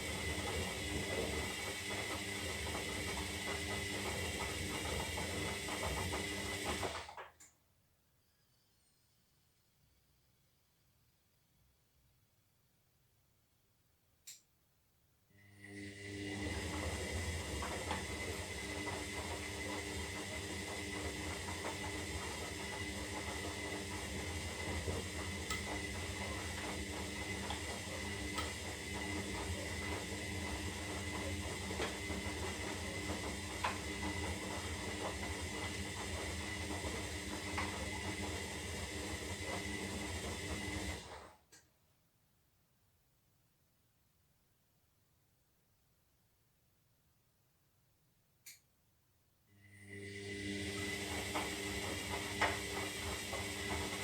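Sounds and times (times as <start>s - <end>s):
washing machine running: 0.0s - 7.2s, 15.4s - 41.4s, 49.6s - 54.0s.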